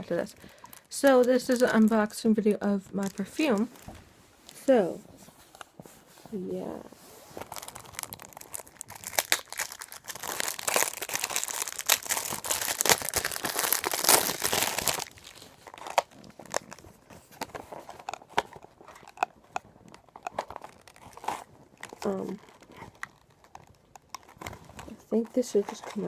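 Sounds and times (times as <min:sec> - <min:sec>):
box packaging crinkling and tearing: 0:06.4 - 0:26.0.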